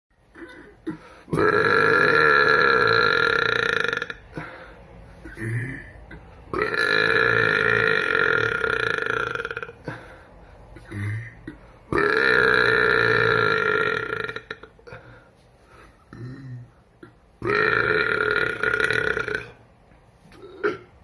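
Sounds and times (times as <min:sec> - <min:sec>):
man belching loudly: 0:01.3 - 0:04.4, 0:05.3 - 0:10.0, 0:10.9 - 0:14.8, 0:16.1 - 0:19.6, 0:20.4 - 0:21.0.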